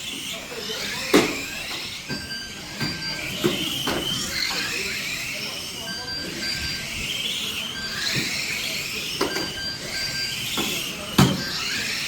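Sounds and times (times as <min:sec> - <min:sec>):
toy car motors whining: 0:00.0 - 0:12.0
short electronic beeps: 0:02.1 - 0:04.9, 0:05.6 - 0:07.1.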